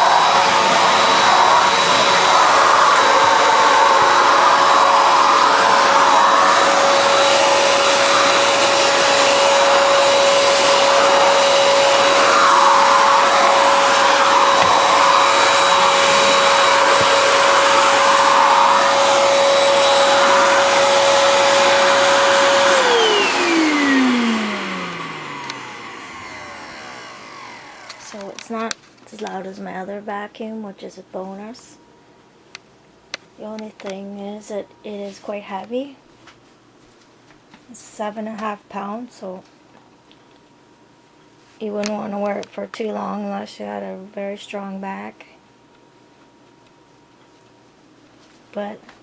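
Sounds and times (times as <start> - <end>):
air rushing through vacuum hose: 0.0 - 28.3
vacuum motor winding down: 0.0 - 28.5
vacuum motor whining: 0.0 - 28.8.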